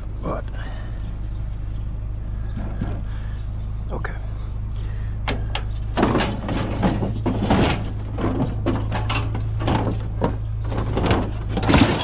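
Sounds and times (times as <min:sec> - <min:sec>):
steady low hum: 0:00.0 - 0:12.0
knocks and clatters: 0:02.5 - 0:03.1, 0:05.2 - 0:12.0.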